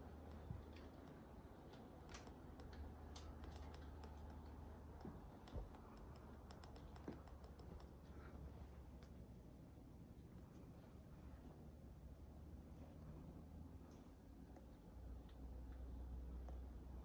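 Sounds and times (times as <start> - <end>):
light clicks and ticks: 0.0 - 8.2.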